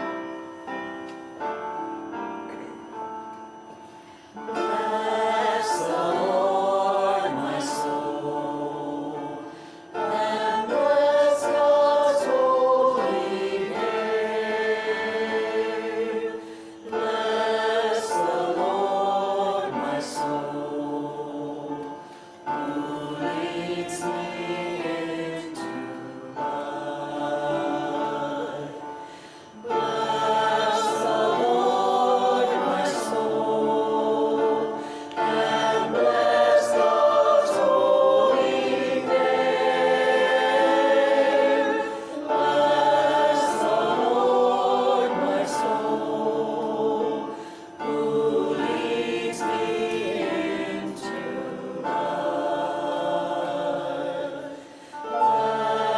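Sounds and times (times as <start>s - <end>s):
choir singing a hymn: 0.0s - 55.9s.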